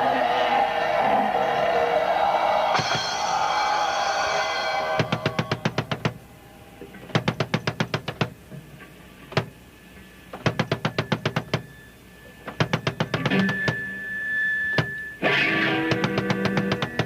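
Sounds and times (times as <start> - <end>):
high guitar feedback tone: 2.6 - 7.0, 11.0 - 17.0
rapid drum runs: 2.7 - 6.3, 12.5 - 14.0, 15.8 - 17.0
single drum hits: 2.8 - 3.2.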